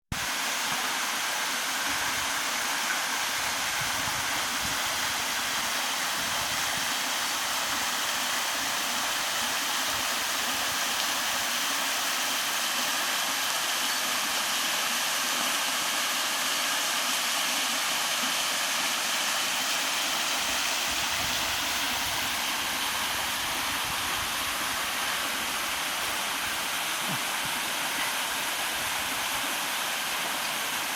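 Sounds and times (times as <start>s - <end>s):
waterfall rushing: 18.9s - 30.9s.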